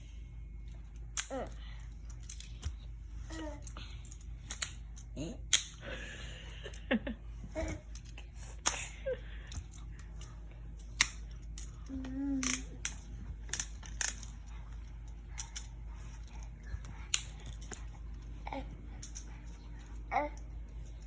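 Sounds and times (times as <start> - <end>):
plastic toy parts clicking: 1.2 - 2.8, 3.6 - 5.8, 9.5 - 14.4, 17.1 - 17.8, 19.0 - 19.3.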